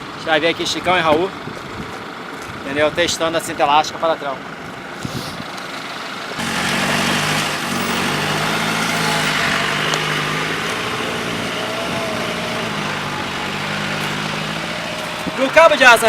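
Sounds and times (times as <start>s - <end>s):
off-road vehicle engine under load: 0.0s - 16.0s
broad rushing noise: 6.4s - 16.0s.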